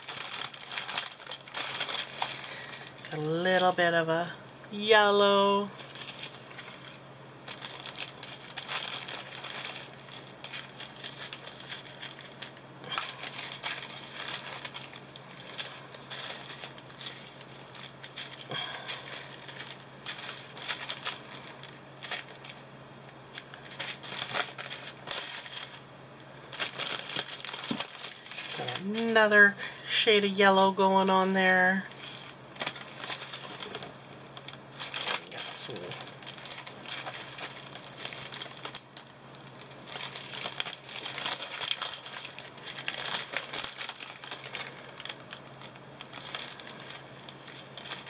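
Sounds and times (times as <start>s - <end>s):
plastic bags crinkling: 0.0s - 48.0s.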